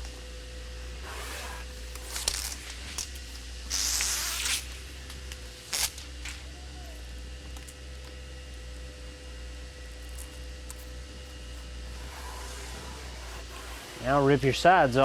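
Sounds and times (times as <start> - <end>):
velcro ripping: 1.0 - 4.7, 5.7 - 6.0, 11.9 - 14.2.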